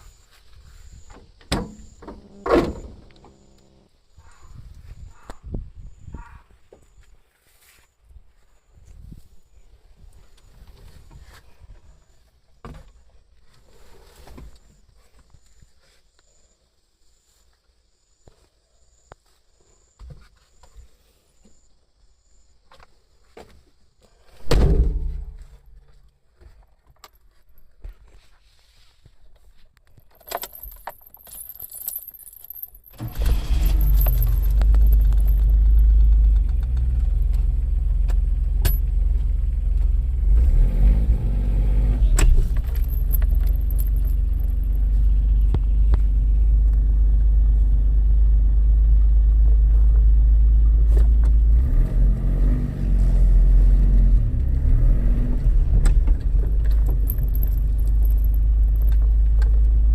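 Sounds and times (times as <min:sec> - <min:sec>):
keys jingling: 0:30.0 - 0:36.1, 0:42.3 - 0:45.1, 0:56.3 - 0:59.0
car engine starting and running: 0:32.9 - 0:59.9.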